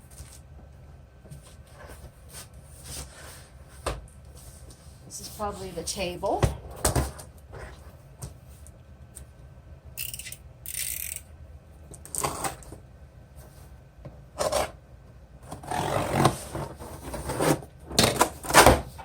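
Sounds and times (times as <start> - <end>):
packing material scraping and rubbing: 15.5 - 17.7.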